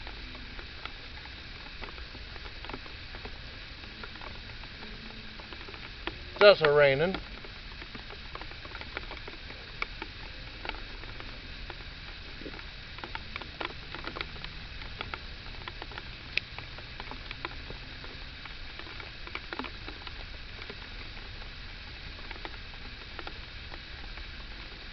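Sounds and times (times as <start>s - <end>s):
rain falling: 0.0s - 24.9s
raindrops ticking close by: 0.0s - 24.9s.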